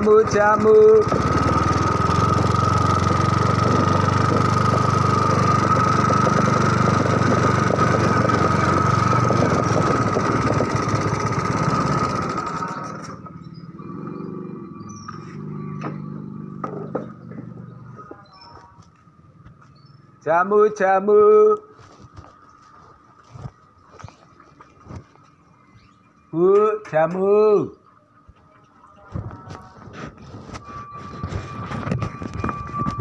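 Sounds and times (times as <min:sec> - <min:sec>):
engine running with whine: 0:00.0 - 0:20.3, 0:29.0 - 0:33.0.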